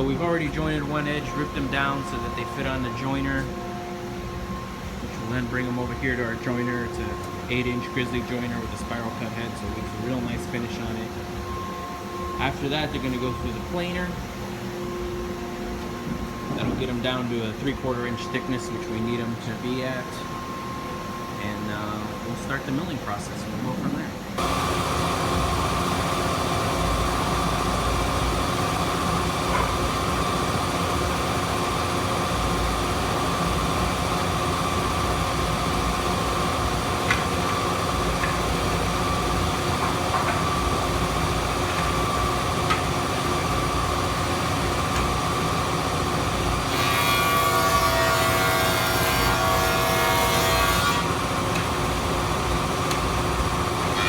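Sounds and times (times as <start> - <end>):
jointer whining: 24.4 - 54.0.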